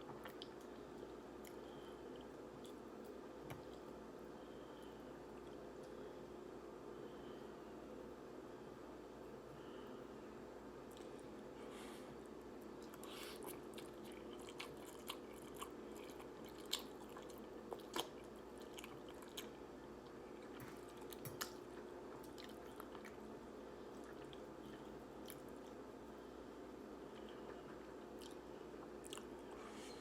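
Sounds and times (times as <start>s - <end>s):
faint steady hum: 0.0s - 30.0s
mouth chewing noodles: 12.6s - 25.9s, 27.1s - 29.6s.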